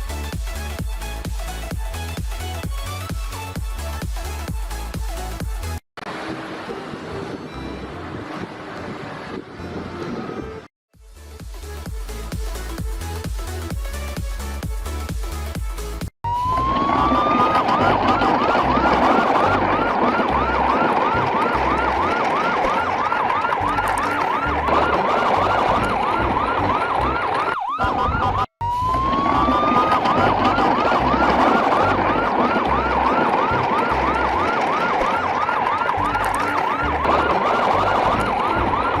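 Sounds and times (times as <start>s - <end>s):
electronic siren wail and yelp: 16.3s - 39.0s
low rumble: 27.8s - 39.0s.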